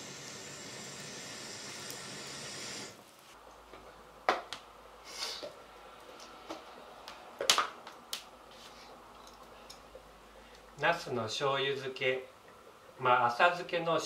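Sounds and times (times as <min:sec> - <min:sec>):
steady hiss: 0:00.0 - 0:03.6, 0:04.8 - 0:06.2.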